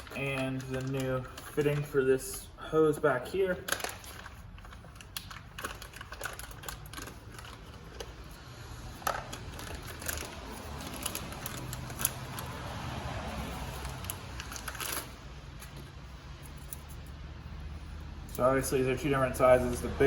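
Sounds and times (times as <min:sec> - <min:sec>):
small parts clicking and tapping: 0:00.0 - 0:02.0, 0:03.6 - 0:12.6.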